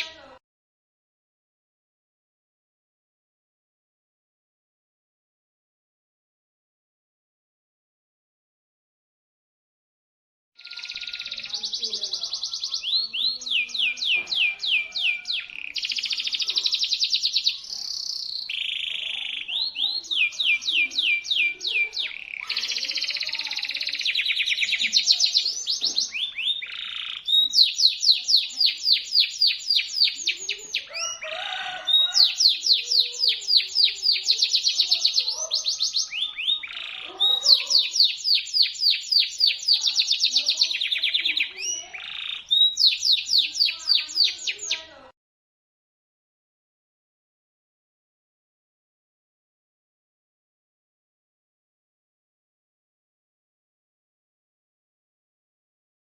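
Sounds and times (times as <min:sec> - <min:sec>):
canary singing trills: 0:10.6 - 0:45.1.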